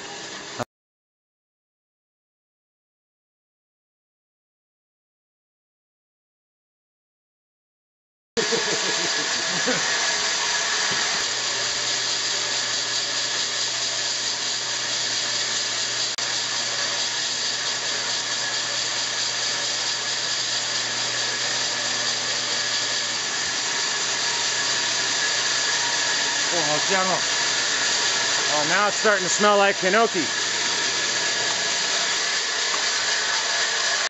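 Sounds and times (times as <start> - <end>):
chainsaw cutting log: 8.4 - 34.0.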